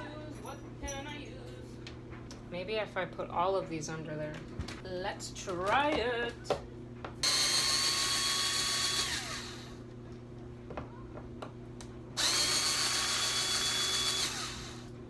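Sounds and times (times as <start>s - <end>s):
power drill driving screws: 7.2s - 9.8s, 12.2s - 14.9s.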